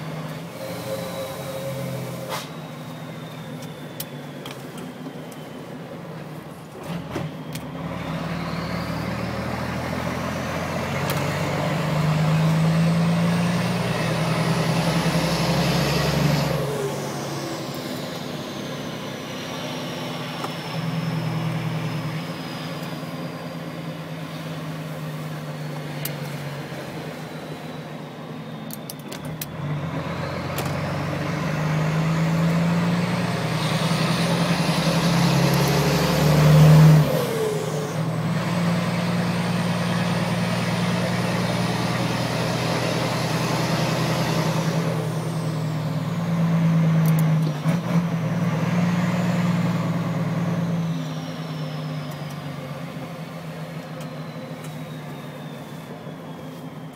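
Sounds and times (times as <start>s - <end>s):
truck engine revving: 0.0s - 4.4s, 6.8s - 56.3s
turbocharger whistling: 0.0s - 56.9s.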